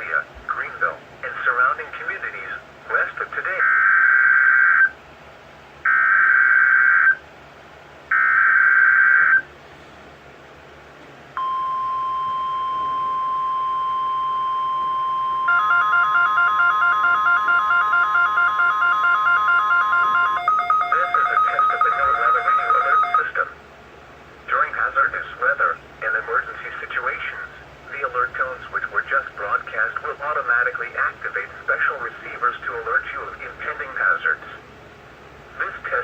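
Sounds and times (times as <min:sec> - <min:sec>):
pulsing electronic alarm: 0:05.9 - 0:07.2, 0:08.1 - 0:09.5, 0:11.4 - 0:23.4
steady warning alarm tone: 0:05.9 - 0:07.2, 0:08.1 - 0:09.5, 0:11.4 - 0:23.5.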